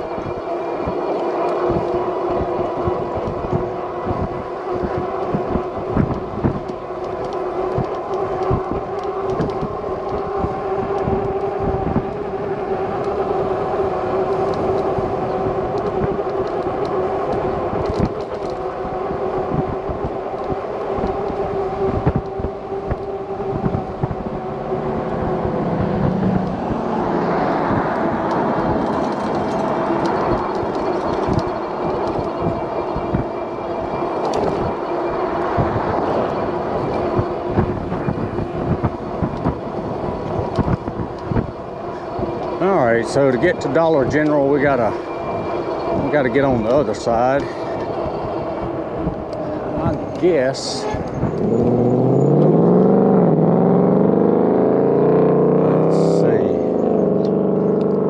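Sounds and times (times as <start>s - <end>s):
e-bike motor and tyre whine: 0.0s - 58.0s
wind buffeting microphone: 0.0s - 58.0s.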